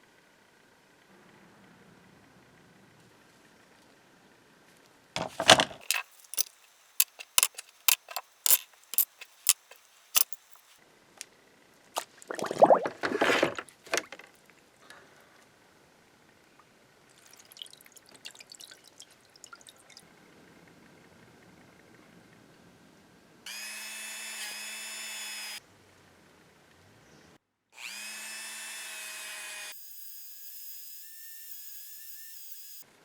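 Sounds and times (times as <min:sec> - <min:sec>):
sharp clinks: 0:05.8 - 0:10.7
liquid pouring and splashing: 0:12.0 - 0:14.1.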